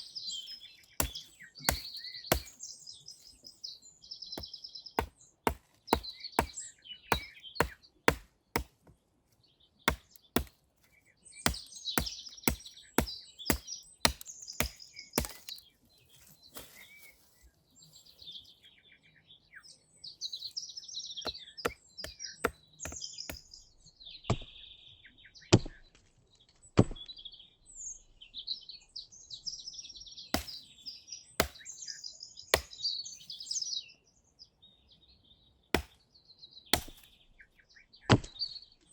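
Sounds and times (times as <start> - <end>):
wood being chopped: 0.0 - 2.6, 4.4 - 9.0, 9.9 - 10.6, 11.4 - 15.6, 21.2 - 23.5, 30.4 - 30.7, 31.4 - 31.7, 32.5 - 32.8, 35.8 - 36.0, 36.7 - 37.1
small birds chirping: 0.0 - 38.9.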